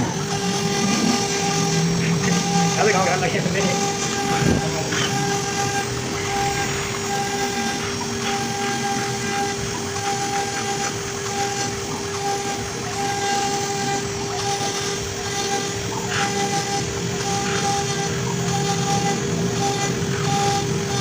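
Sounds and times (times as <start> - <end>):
higher tone cutting in and out: 0.0 - 9.8
cnc router whine: 0.0 - 21.0.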